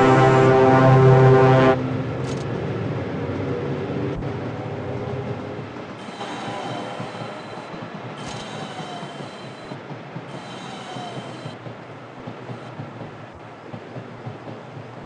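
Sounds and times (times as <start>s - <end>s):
train rolling on rails: 0.0s - 15.0s
high-pitched wheel squeal: 6.0s - 11.6s.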